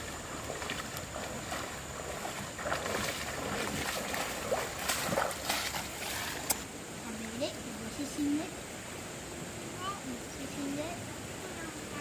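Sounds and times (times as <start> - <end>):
splashes and knocks: 0.0 - 6.6
stream water flowing: 0.0 - 12.0.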